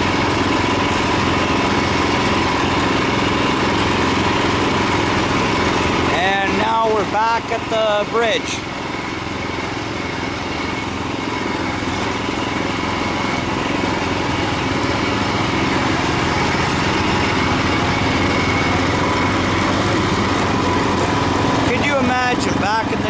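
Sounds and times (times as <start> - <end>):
garden tractor engine running: 0.0 - 23.0.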